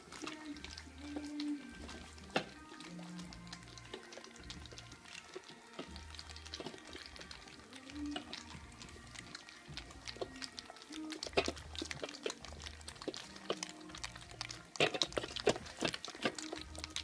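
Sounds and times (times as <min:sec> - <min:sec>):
puppies lapping food: 0:00.0 - 0:17.0.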